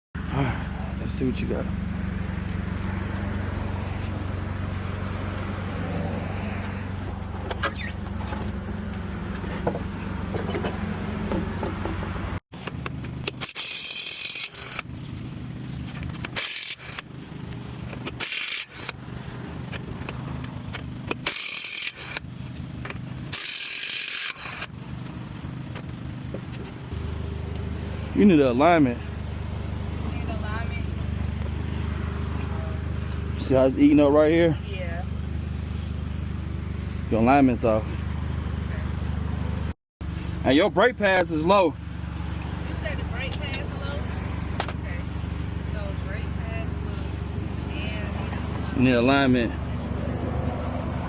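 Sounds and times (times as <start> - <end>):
low engine hum: 0.2 - 51.0
air impact wrench hissing: 13.3 - 14.8, 16.2 - 17.1, 18.1 - 19.0, 21.1 - 22.2, 23.3 - 24.7.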